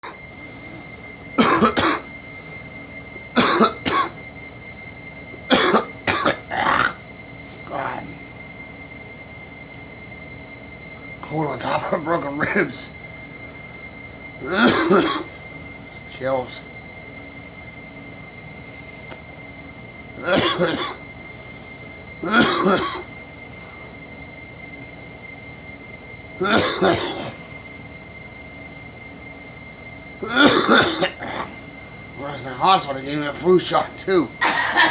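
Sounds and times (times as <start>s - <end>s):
background hum with high tone: 0.0s - 34.9s
person coughing: 1.4s - 2.1s, 3.4s - 4.2s, 5.5s - 7.0s, 14.5s - 15.4s, 20.2s - 21.1s, 22.2s - 23.1s, 26.4s - 27.4s, 30.2s - 31.6s, 34.4s - 34.9s.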